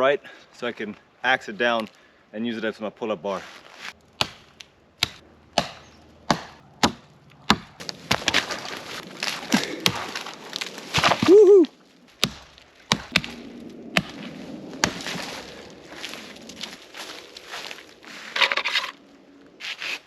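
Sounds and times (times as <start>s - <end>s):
axe chopping into tree: 4.2s - 11.3s, 12.2s - 13.4s, 14.8s - 15.2s
tree cracking and crashing down: 7.3s - 18.5s
man whooping: 11.2s - 11.8s.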